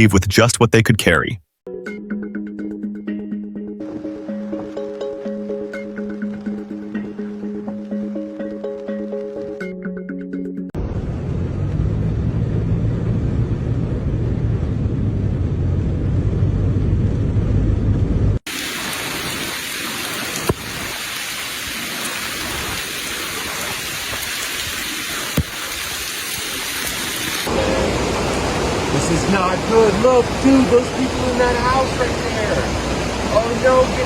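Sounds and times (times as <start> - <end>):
low rumbling roar: 10.8 - 18.4, 27.4 - 30.5
rain hiss: 18.5 - 34.0.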